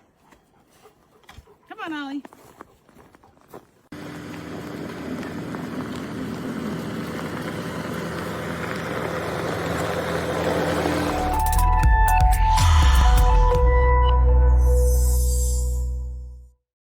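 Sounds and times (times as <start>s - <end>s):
engine running: 3.9s - 13.4s
music: 11.1s - 16.6s.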